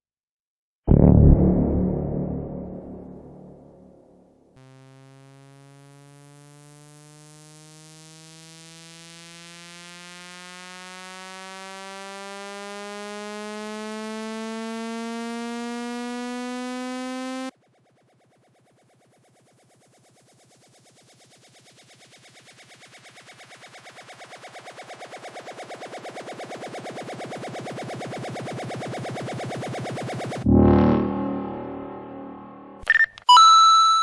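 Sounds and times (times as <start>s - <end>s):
faint pulsing sound: 0.9s - 7.2s, 17.6s - 32.8s
rising buzzy electronic tone: 0.9s - 17.5s, 20.2s - 32.8s.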